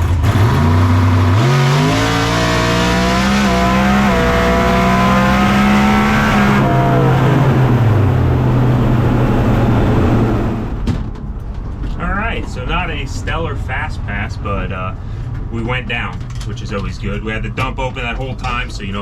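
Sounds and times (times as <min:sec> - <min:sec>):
car engine accelerating: 0:00.0 - 0:10.9.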